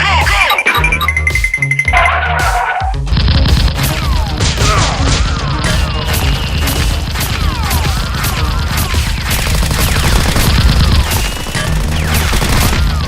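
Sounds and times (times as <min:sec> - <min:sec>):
bass-heavy music: 0:00.0 - 0:13.0
gunfire shots: 0:03.2 - 0:13.0.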